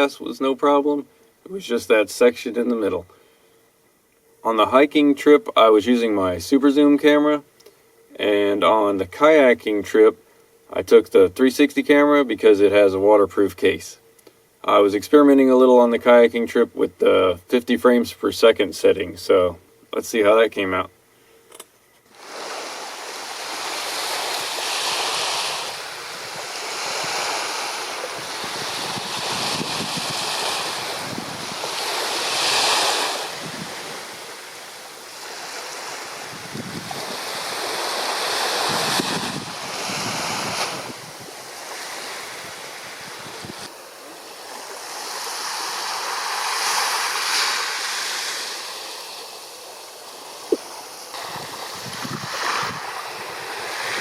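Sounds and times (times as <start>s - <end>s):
wind buffeting microphone: 28.0s - 31.7s, 33.3s - 34.1s, 36.2s - 37.5s, 38.6s - 41.5s, 42.4s - 43.7s, 51.2s - 54.0s.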